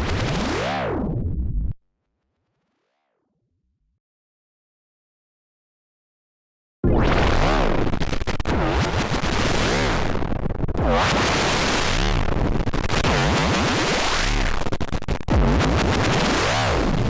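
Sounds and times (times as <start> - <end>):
glitchy electronic noise: 7.1 - 17.0.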